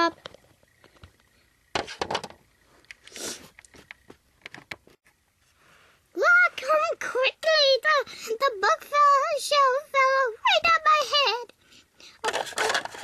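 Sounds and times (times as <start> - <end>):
plastic toys clacking: 12.2 - 13.0.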